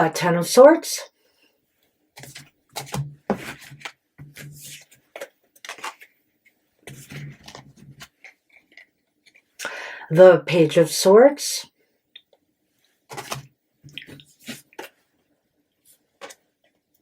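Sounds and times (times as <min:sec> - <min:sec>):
cards rustling and tapping: 0:02.2 - 0:09.5, 0:13.1 - 0:15.0.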